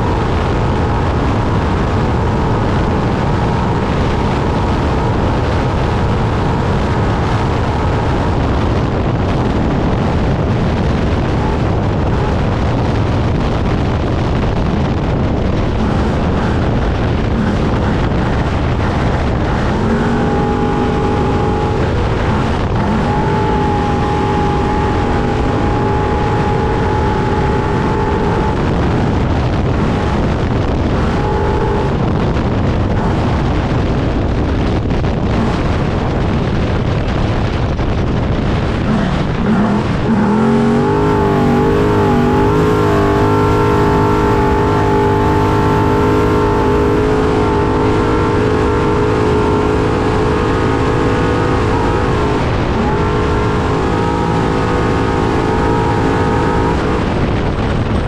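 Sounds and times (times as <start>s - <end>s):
rushing wind: 0.0s - 58.0s
terrain noise: 0.0s - 58.0s
truck engine and drivetrain noise: 0.0s - 58.0s
steady pitched tone: 14.6s - 36.6s, 38.2s - 57.4s.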